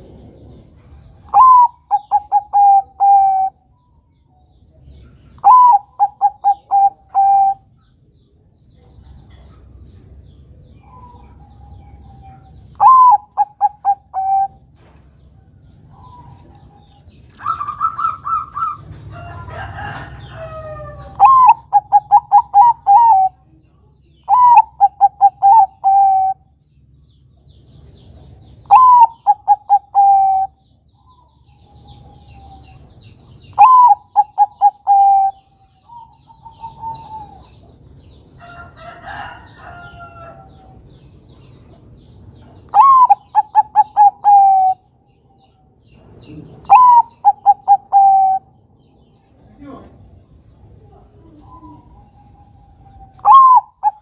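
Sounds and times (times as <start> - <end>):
dove cooing: 0.0 - 3.6, 5.4 - 7.7, 10.8 - 14.6, 19.8 - 23.5, 24.2 - 26.5, 28.6 - 30.6, 33.5 - 37.8, 42.7 - 44.9, 46.3 - 48.6, 50.8 - 54.0
rough dove call: 1.3 - 3.5, 5.4 - 7.6, 12.8 - 14.6, 21.1 - 23.4, 24.3 - 26.4, 28.7 - 30.6, 33.5 - 37.4, 42.7 - 44.8, 46.7 - 48.4, 53.1 - 54.0.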